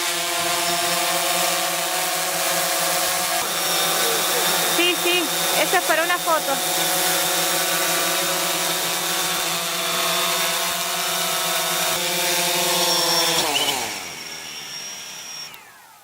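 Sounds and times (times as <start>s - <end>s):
machine motor whining: 0.0s - 16.0s.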